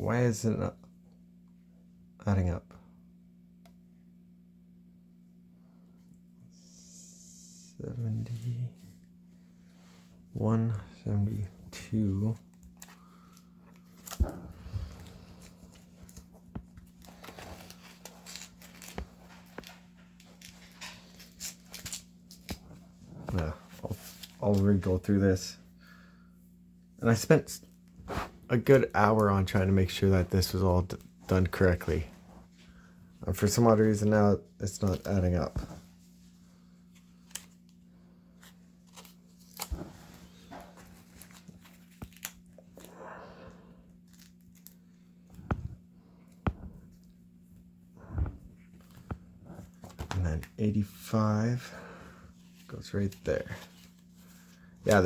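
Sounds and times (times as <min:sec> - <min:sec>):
low electrical hum: 0:00.0 - 0:55.0
cards and pages rustling: 0:11.2 - 0:25.2, 0:34.6 - 0:42.9, 0:44.0 - 0:51.7, 0:52.3 - 0:55.0.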